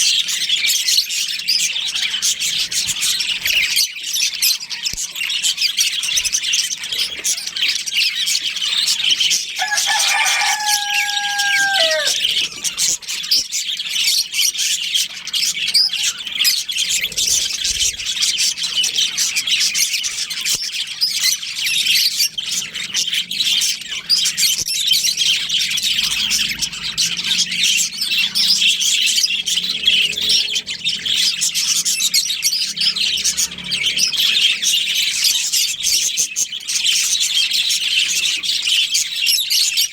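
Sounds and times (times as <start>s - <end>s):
budgerigars chirping and chattering: 0.0s - 39.9s
low held bird call: 9.6s - 12.8s.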